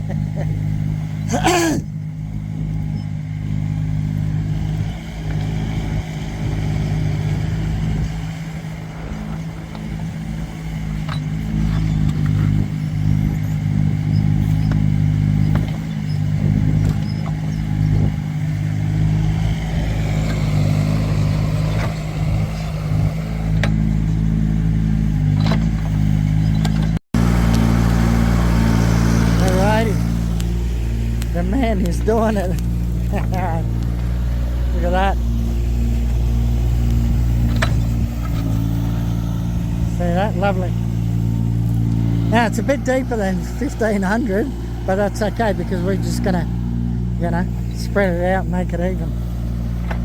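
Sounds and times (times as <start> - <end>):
excavator diesel engine running: 0.0 - 50.0.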